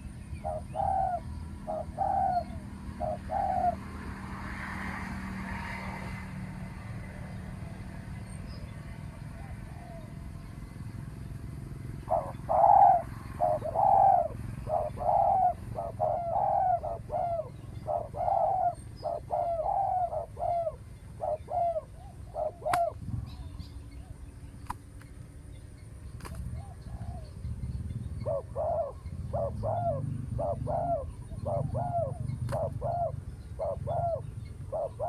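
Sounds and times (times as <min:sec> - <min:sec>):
doves cooing: 0:00.0 - 0:04.0, 0:11.9 - 0:23.6, 0:26.5 - 0:35.0
low background rumble: 0:06.3 - 0:35.0.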